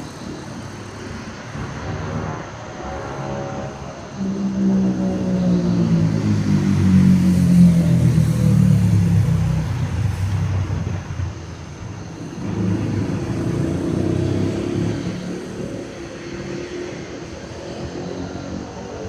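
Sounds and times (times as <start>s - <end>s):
low rumbling vehicle engine: 0.0s - 19.0s.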